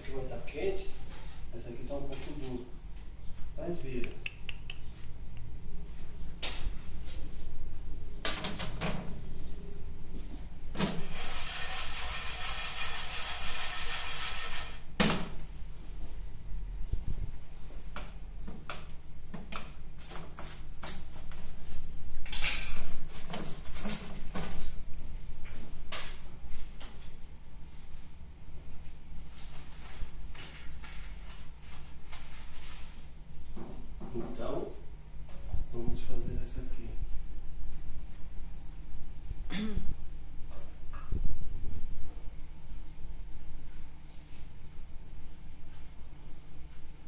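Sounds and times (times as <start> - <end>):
steady low hum: 0.0 - 47.0.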